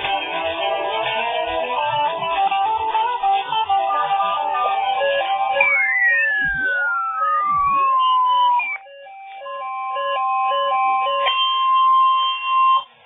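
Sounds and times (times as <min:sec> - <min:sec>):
music with stepped note pattern: 0:00.0 - 0:13.0
steady tone: 0:03.6 - 0:09.9
siren-like gliding tones: 0:04.0 - 0:12.1.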